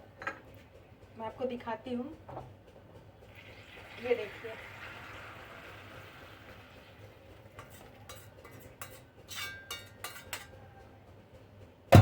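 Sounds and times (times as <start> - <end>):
spoon clinking against a pan: 7.6 - 10.6.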